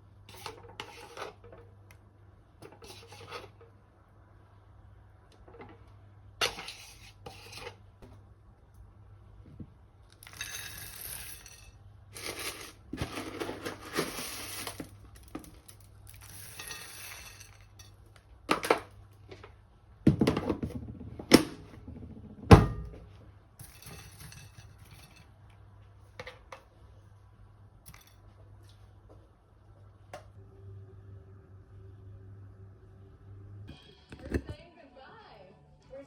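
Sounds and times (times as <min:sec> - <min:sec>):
dishes scraping and rustling: 0:00.2 - 0:01.8, 0:02.6 - 0:03.8, 0:05.4 - 0:07.9, 0:10.2 - 0:19.4, 0:23.6 - 0:25.5.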